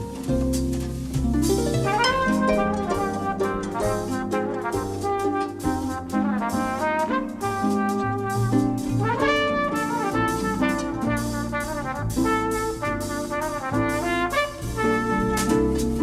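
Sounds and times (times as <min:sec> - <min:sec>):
bass line: 0:00.0 - 0:16.0
brass instruments playing melody: 0:00.0 - 0:16.0.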